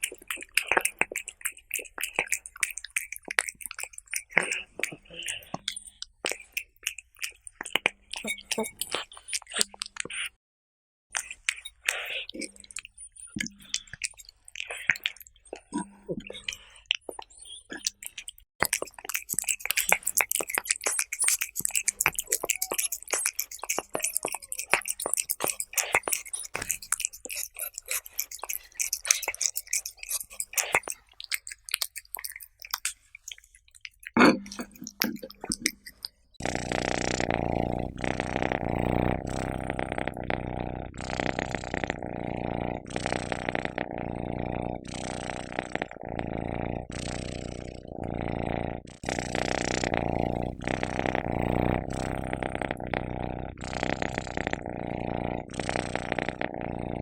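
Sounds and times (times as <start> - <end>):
cats crunching dry kibble: 18.6 - 32.3.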